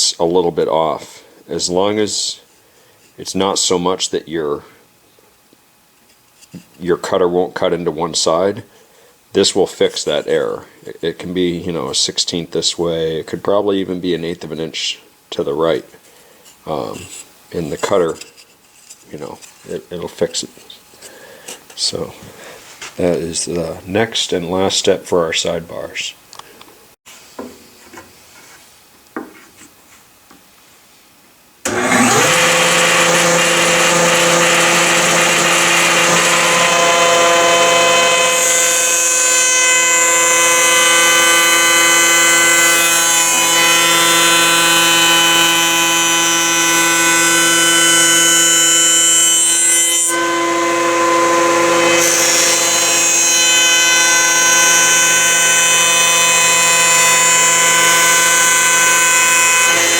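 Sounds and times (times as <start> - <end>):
router motor whining: 31.6 - 59.9.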